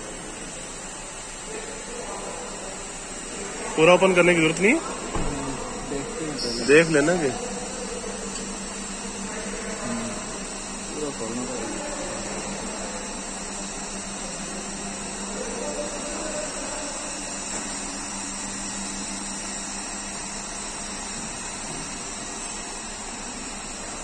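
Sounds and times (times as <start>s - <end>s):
motor or blower running: 0.0s - 24.0s.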